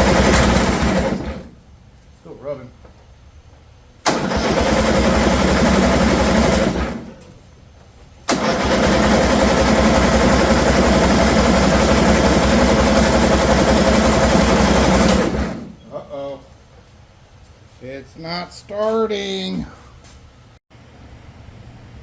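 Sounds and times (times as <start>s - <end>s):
electric starter cranking engine: 0.0s - 1.5s, 4.0s - 7.3s, 8.2s - 15.8s.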